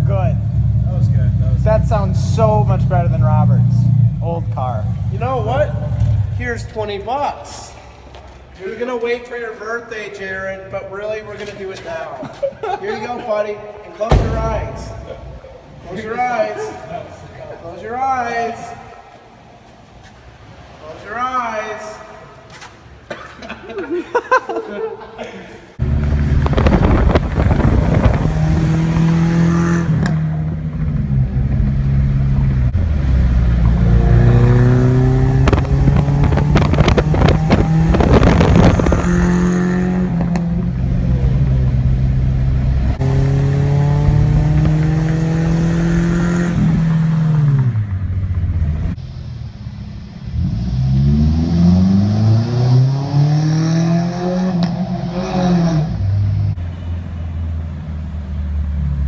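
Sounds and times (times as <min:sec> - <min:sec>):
car engine revving: 0:25.8 - 0:49.3, 0:50.2 - 0:56.6.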